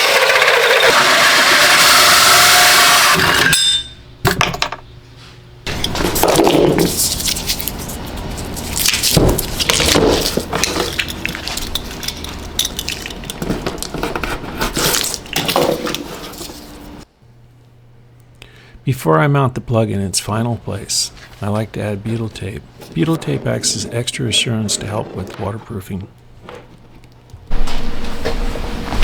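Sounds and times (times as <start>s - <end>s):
power drill boring: 0.0s - 3.4s
tools knocking and clattering: 3.3s - 4.8s, 9.2s - 16.1s.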